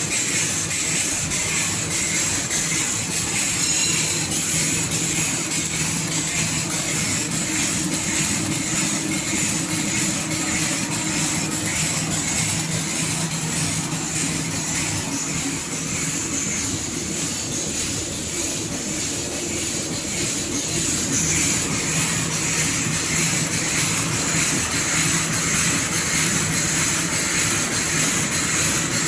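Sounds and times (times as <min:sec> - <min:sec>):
packing machine humming and hissing: 0:00.0 - 0:29.0.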